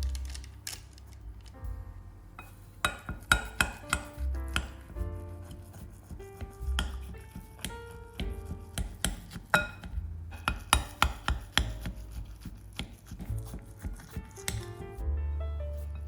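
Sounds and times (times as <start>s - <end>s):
background music: 0.0s - 16.0s
utensils knocking on a board: 2.4s - 5.1s, 6.1s - 15.0s.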